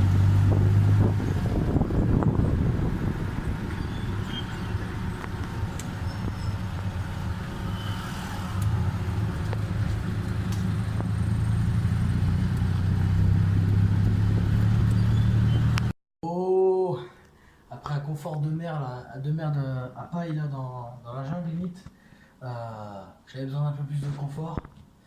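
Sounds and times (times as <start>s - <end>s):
tuk-tuk engine running: 0.0s - 15.9s
road noise: 0.0s - 16.0s.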